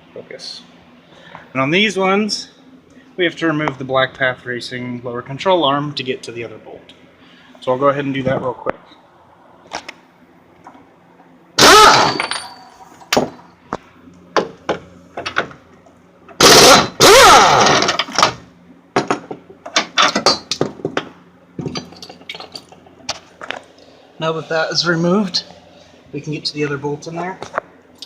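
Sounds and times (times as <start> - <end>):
impact wrench whining: 11.6 - 13.3, 16.4 - 18.4.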